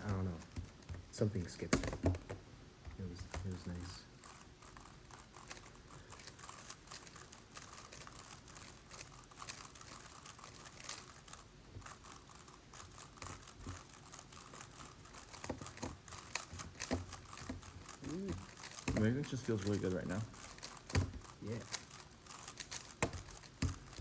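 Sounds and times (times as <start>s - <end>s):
plastic puzzle clicking: 0.0s - 24.0s.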